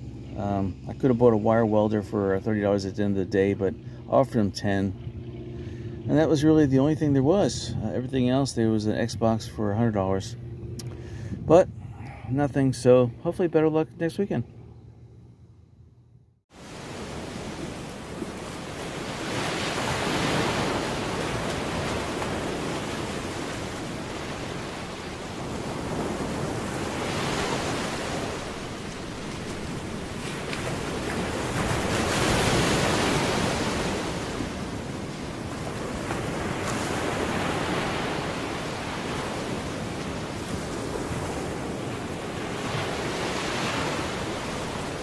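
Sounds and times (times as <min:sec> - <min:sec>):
wind on microphone: 0:07.3 - 0:12.7
surf washing in: 0:16.5 - 0:45.0.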